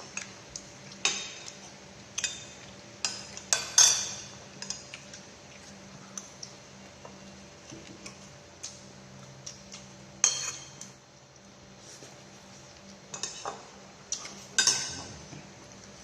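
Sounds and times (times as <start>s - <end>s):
utensils clinking against dishes: 0.9s - 5.2s, 10.2s - 10.9s, 13.1s - 15.4s.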